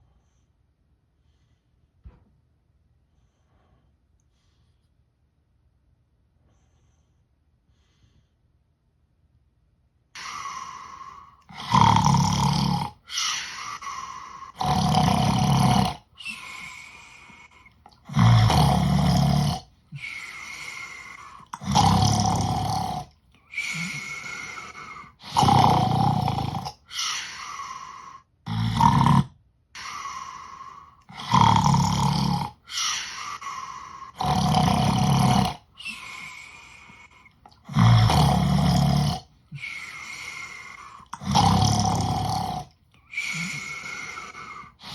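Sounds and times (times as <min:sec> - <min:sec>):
loud rasping snores: 0:10.2 - 0:44.9.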